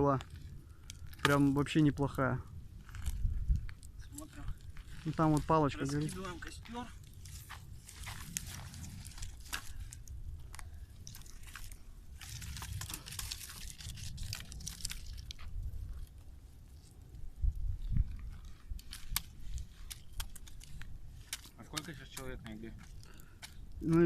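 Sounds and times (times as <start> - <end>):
embers crunching and scraping: 0.0 - 24.0
sharp cracks and clicks: 0.1 - 1.9, 18.8 - 24.0.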